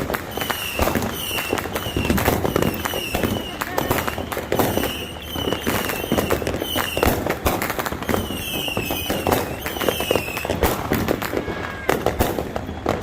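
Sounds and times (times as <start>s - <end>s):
fireworks bangs and crackles: 0.0s - 13.0s
short high whistles: 0.4s - 7.1s, 8.0s - 10.6s.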